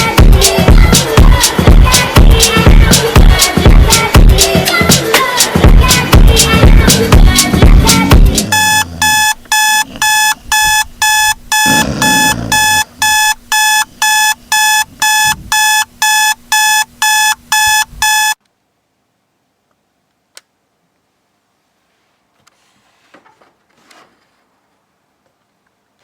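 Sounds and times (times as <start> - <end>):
electronic alarm clock beeping: 8.1 - 18.4.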